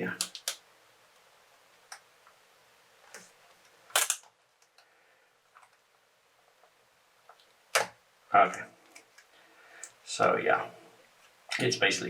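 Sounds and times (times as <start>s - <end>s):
adhesive tape crackling: 0.0s - 2.4s, 3.1s - 4.8s
sharp plastic clicks: 0.1s - 0.6s, 3.9s - 4.9s.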